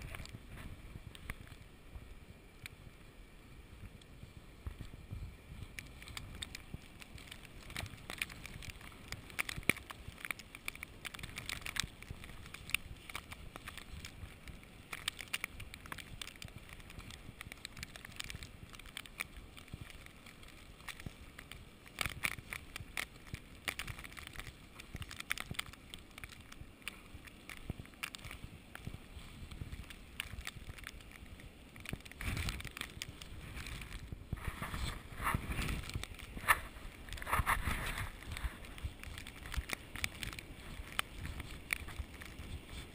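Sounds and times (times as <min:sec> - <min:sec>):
wind buffeting microphone: 0:03.6 - 0:10.2
footsteps crunching in snow: 0:25.9 - 0:42.9.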